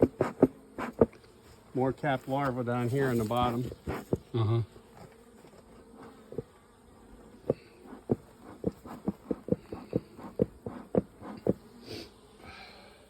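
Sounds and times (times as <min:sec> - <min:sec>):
bellows puffing thumps: 0:00.0 - 0:01.2, 0:03.3 - 0:04.4, 0:05.0 - 0:06.6, 0:07.3 - 0:11.8
bees buzzing: 0:00.0 - 0:13.0.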